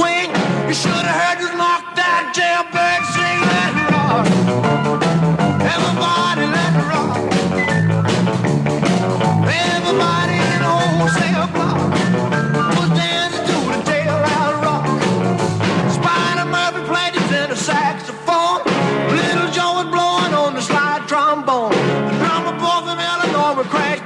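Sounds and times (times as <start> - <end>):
man singing: 0.0 - 4.3, 5.6 - 7.4, 9.4 - 15.2, 15.8 - 24.0
drums: 0.0 - 24.0
walking bass: 3.4 - 16.5.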